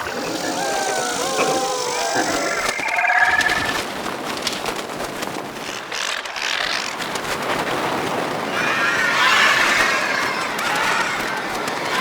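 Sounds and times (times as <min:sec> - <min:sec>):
insect-like creature chittering: 0:00.0 - 0:03.8, 0:05.7 - 0:07.0
rustling and clicking: 0:00.1 - 0:08.5, 0:09.6 - 0:12.0.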